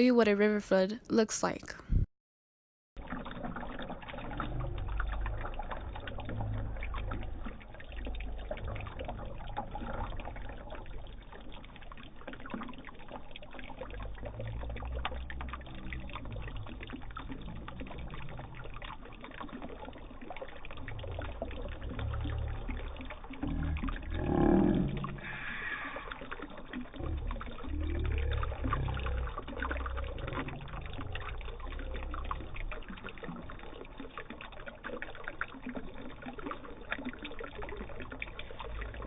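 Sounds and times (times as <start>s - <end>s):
water pouring and trickling: 3.0s - 39.0s
low rumble: 4.3s - 11.1s, 14.0s - 18.8s, 20.9s - 25.8s, 27.0s - 32.8s.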